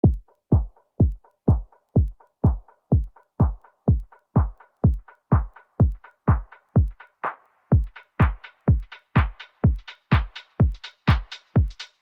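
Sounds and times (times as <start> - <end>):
deep kick drum: 0.0 - 7.0, 7.7 - 11.8.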